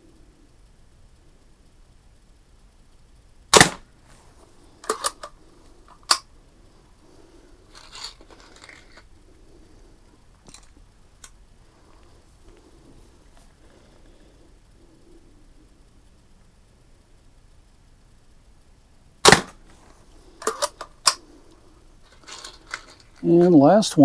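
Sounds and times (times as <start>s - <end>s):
rustling: 2.2s - 17.8s, 18.4s - 24.0s
bb gun shot snap: 3.5s - 3.9s, 19.2s - 19.6s
quick clicks: 3.5s - 6.3s, 7.7s - 9.1s, 19.2s - 23.3s.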